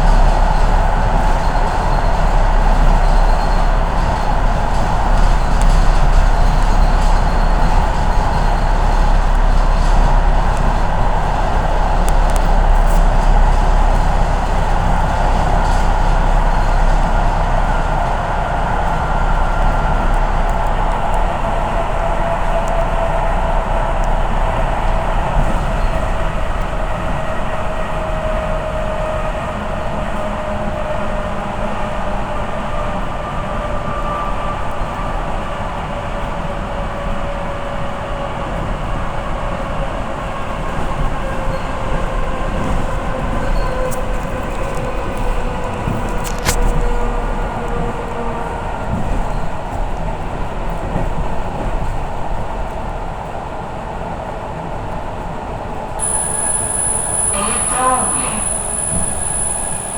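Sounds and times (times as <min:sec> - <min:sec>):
train rumble inside carriage: 0:00.0 - 0:59.9
electric motor whine: 0:56.0 - 0:59.9.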